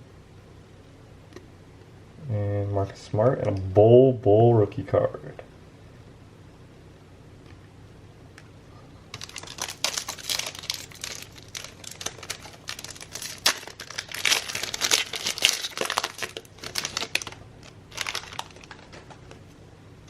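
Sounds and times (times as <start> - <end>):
plastic wrapper crinkling: 9.1 - 19.4.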